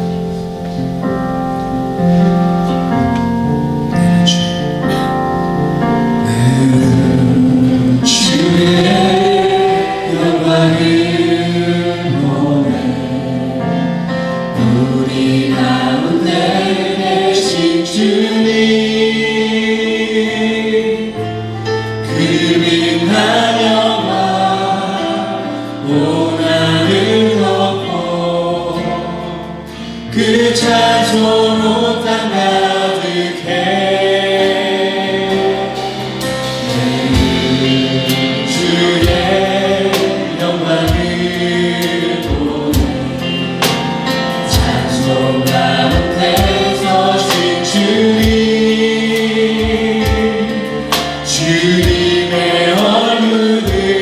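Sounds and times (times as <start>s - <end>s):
sustained keyboard notes: 0.0s - 54.0s
people singing: 6.2s - 54.0s
low drum beats: 35.6s - 52.4s.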